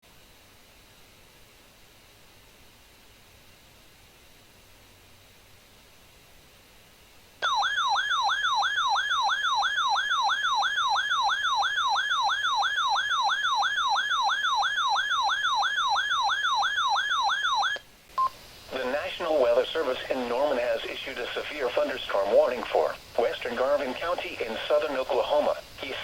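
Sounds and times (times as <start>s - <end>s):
faint hiss: 0.0s - 7.4s, 17.8s - 26.0s
warbling electronic siren: 7.4s - 17.8s.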